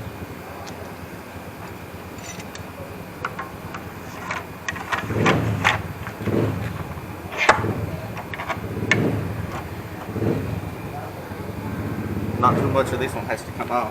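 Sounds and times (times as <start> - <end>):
tools clicking on wooden table: 1.6 - 10.2
dull thumps: 1.6 - 11.0.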